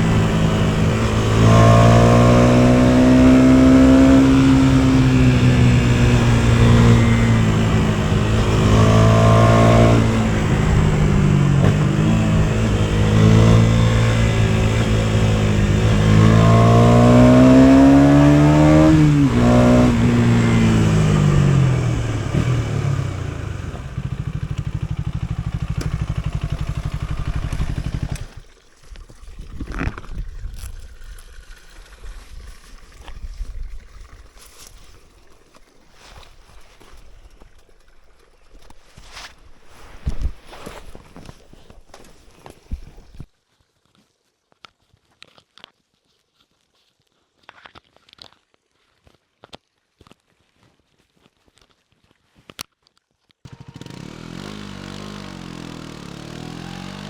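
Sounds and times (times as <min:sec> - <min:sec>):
motorcycle engine revving: 0:00.0 - 0:28.5, 0:53.5 - 0:57.0.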